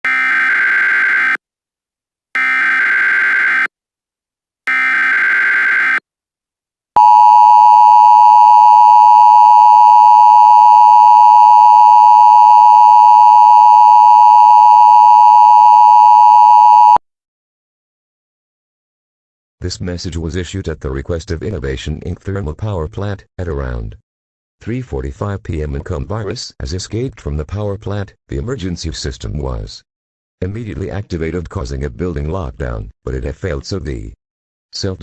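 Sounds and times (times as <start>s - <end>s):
loud steady dual tone: 7.0s - 17.0s.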